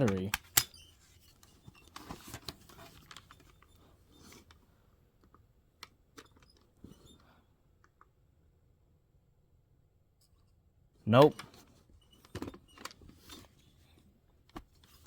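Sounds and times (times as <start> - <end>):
small clicks of laptop parts: 0.0 - 4.6.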